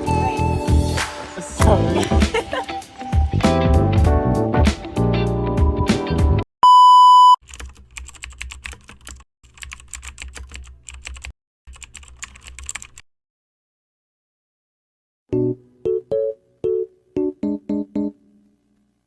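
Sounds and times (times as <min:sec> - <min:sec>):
music: 0:00.0 - 0:06.4, 0:15.3 - 0:18.6
loud electronic beep: 0:06.6 - 0:07.4
computer keyboard typing: 0:07.4 - 0:13.0.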